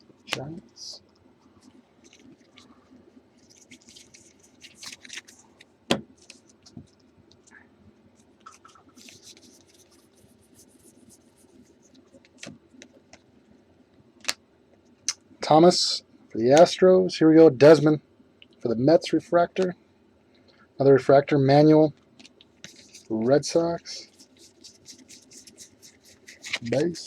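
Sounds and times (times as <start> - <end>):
trading cards scraping rustles: 1.4 - 7.6, 8.2 - 13.0, 22.2 - 27.0.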